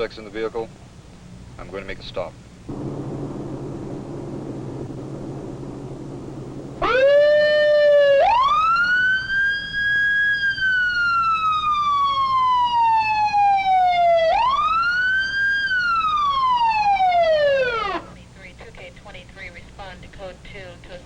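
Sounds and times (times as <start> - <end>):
police siren wailing: 2.7 - 18.1.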